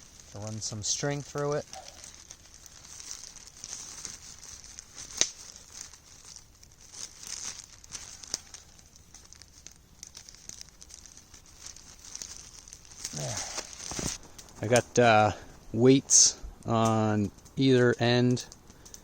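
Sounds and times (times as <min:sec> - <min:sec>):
plastic sheeting crinkling: 0:00.0 - 0:15.5.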